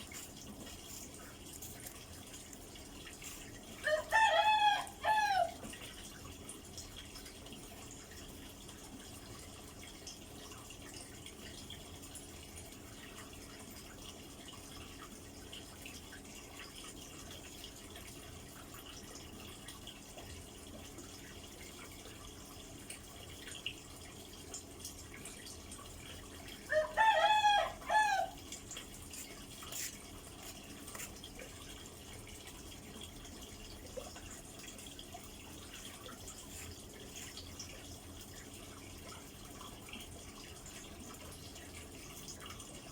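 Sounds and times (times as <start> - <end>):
wavering animal call: 3.8 - 5.6, 26.7 - 28.4.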